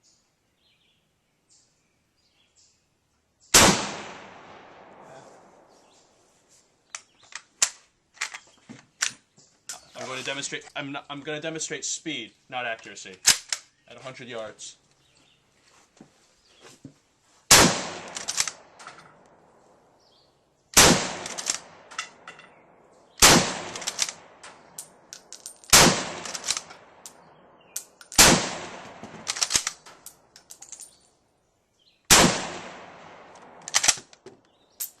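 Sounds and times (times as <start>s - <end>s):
rifle shots: 3.6s - 5.8s, 17.5s - 18.9s, 20.8s - 22.3s, 23.2s - 27.1s, 28.1s - 29.9s, 32.1s - 34.1s
rifle bolt clattering: 6.9s - 9.8s, 13.2s - 13.7s, 18.0s - 19.4s, 21.1s - 22.6s, 23.2s - 27.2s, 27.8s - 31.0s, 33.3s - 34.2s.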